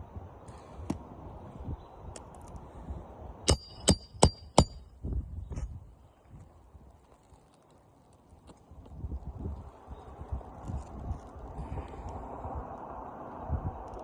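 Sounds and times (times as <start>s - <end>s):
hammer striking nail: 3.5s - 4.8s
rustle of handling: 5.5s - 12.2s.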